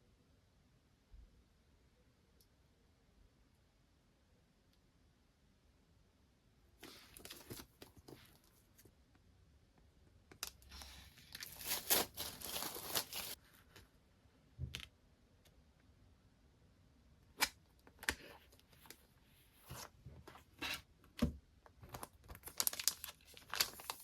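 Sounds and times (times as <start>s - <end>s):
packaging crinkling and tearing: 10.4s - 13.4s, 21.9s - 24.0s.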